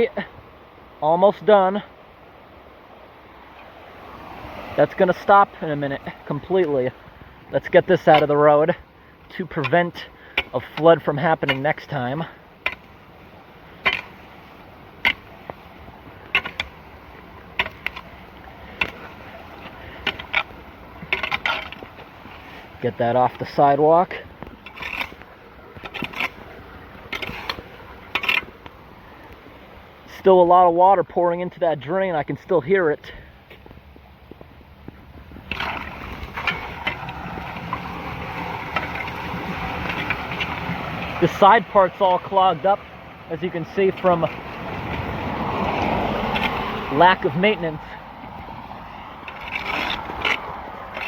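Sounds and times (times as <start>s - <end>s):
water rushing into storm drain: 0.0s - 30.2s, 35.2s - 51.0s
debris scraping and knocking: 9.3s - 28.8s, 35.3s - 51.0s.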